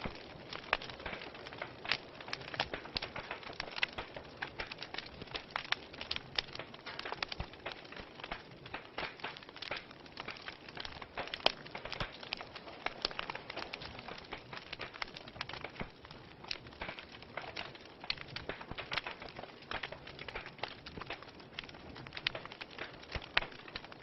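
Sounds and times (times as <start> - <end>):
wood fire crackling: 0.0 - 24.0.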